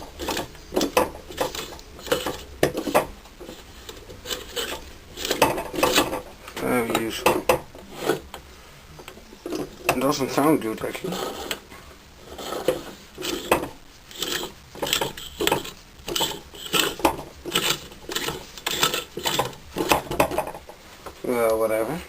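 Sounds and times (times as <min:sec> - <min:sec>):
rhythmic mechanical clicking and rubbing: 0:00.0 - 0:08.3, 0:09.0 - 0:20.8.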